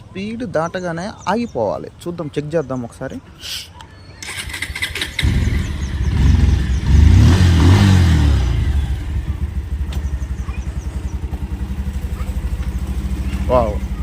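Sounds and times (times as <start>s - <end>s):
motorcycle engine revving and idling: 4.2s - 14.0s.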